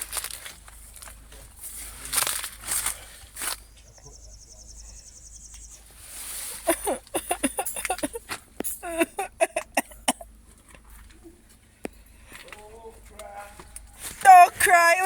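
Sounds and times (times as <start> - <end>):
insect trill: 3.6 - 5.9
chicken clucking: 6.7 - 8.2.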